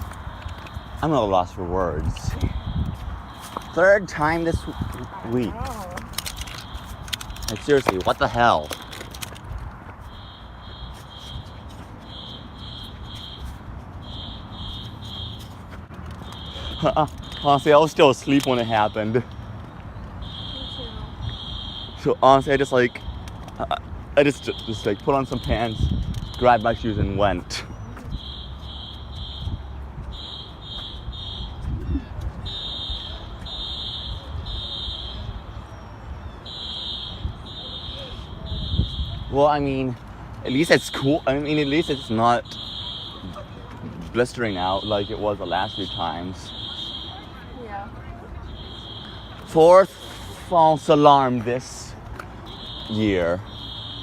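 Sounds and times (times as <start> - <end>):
fire alarm high-pitched beeps: 2.3 - 5.4, 10.1 - 15.6, 16.2 - 19.2, 20.2 - 23.3, 24.2 - 26.9, 27.9 - 31.7, 32.4 - 39.4, 41.5 - 43.4, 44.2 - 47.5, 48.4 - 50.2, 52.4 - 54.0.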